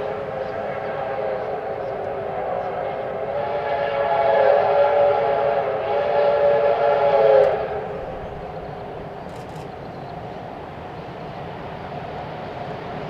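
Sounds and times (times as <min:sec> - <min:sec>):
train rumbling past: 0:00.0 - 0:13.0
locomotive whistle blast: 0:03.2 - 0:08.1.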